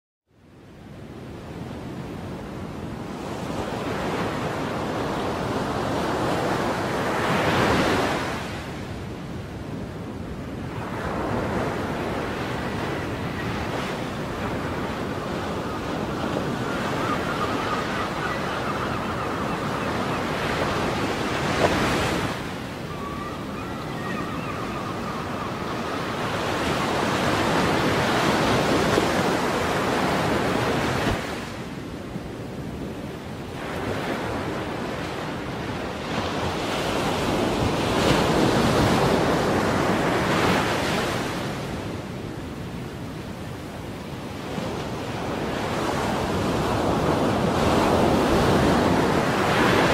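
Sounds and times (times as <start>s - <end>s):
wind: 0.2s - 49.9s
ocean waves breaking: 10.6s - 31.7s
seagull calls: 15.4s - 21.5s, 22.7s - 27.6s.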